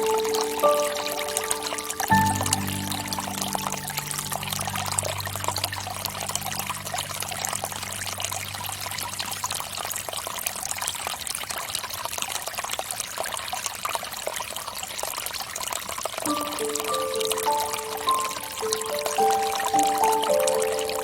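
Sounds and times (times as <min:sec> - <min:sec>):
low sustained music tones: 0:00.0 - 0:10.6, 0:16.2 - 0:21.0
fountain water trickling: 0:00.0 - 0:21.0.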